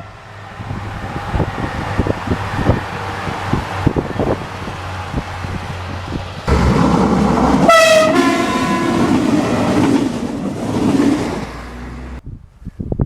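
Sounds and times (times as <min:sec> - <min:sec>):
train rolling on rails: 0:00.0 - 0:12.2
train horn: 0:06.5 - 0:10.3.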